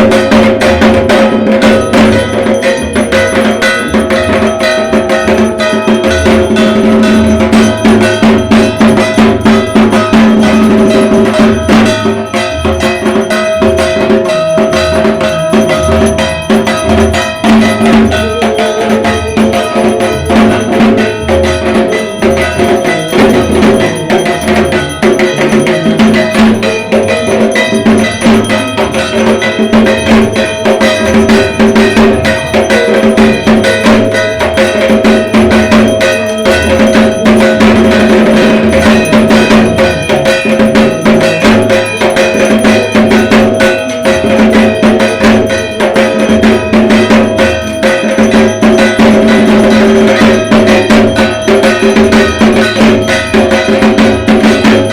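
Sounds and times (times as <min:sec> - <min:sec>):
drums in fast dense rhythm: 0:00.0 - 0:54.9
steady ringing tone: 0:00.0 - 0:54.9.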